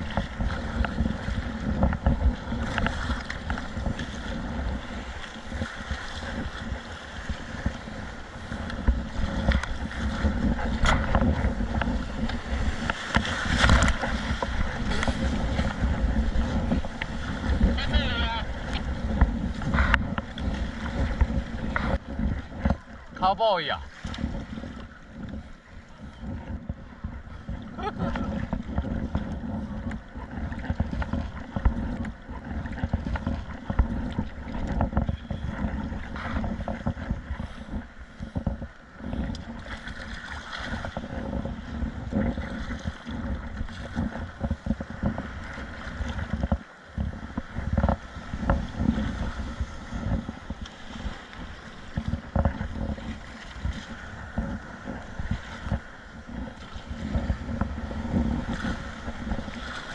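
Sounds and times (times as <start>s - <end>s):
water sloshing around kayak: 0.0s - 59.9s
wind buffeting microphone: 0.0s - 59.9s.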